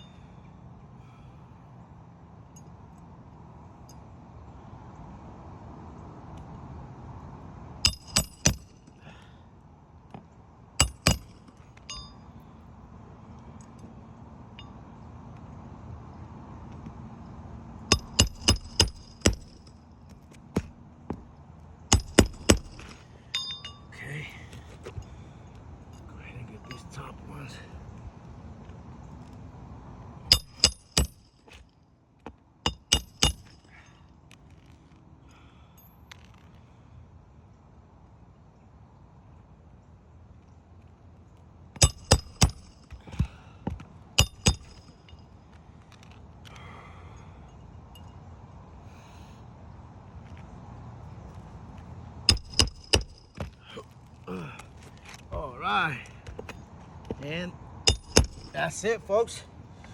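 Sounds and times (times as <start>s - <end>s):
light metal clink: 2.4s - 3.1s, 3.8s - 4.1s, 7.8s - 9.2s, 10.8s - 12.6s, 13.6s - 15.0s, 17.9s - 20.7s, 21.9s - 25.2s, 25.8s - 27.1s, 30.3s - 31.7s, 32.6s - 34.8s, 41.8s - 48.6s, 52.3s - 53.6s, 57.8s - 58.6s
hammer striking metal: 7.8s - 8.8s, 10.8s - 12.2s, 17.9s - 19.7s, 21.9s - 23.9s, 30.3s - 31.6s, 32.7s - 33.7s, 41.8s - 45.2s, 52.3s - 53.5s, 57.9s - 58.6s.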